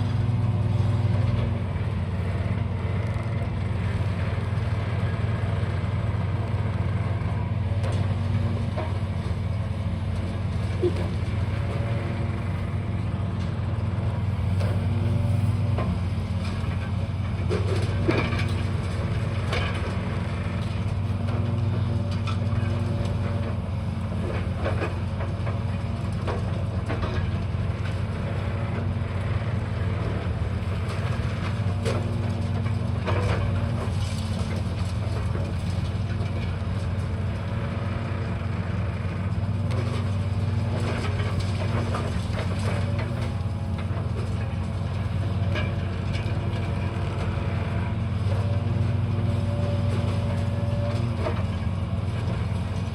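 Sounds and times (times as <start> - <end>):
demolition machine engine running: 0.0 - 52.9
debris crunching and clattering: 39.4 - 47.4.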